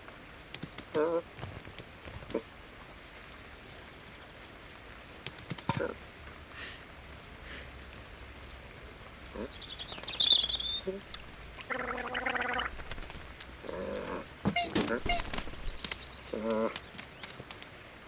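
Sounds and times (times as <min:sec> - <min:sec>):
high bird twitter: 0:09.5 - 0:12.8, 0:14.5 - 0:16.4.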